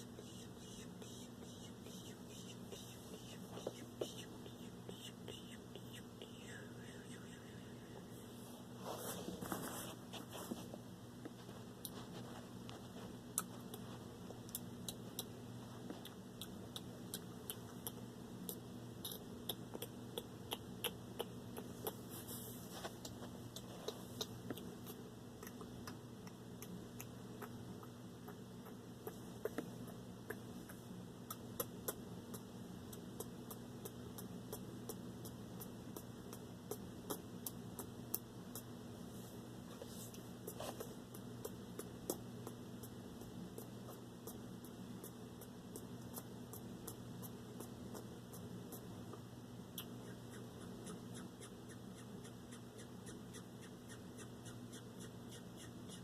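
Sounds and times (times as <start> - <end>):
steady low hum: 0.0 - 56.0
mouth clicks and lip smacks: 13.3 - 22.0, 22.9 - 38.7, 40.4 - 56.0.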